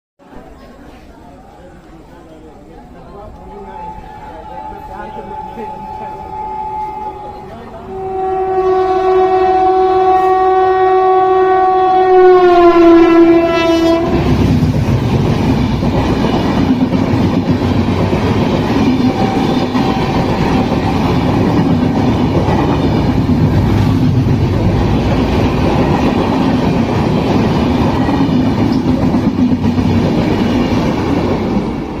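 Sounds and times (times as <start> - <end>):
train passing rumble: 1.6 - 32.0
train horn blast: 3.8 - 14.5, 19.0 - 21.6.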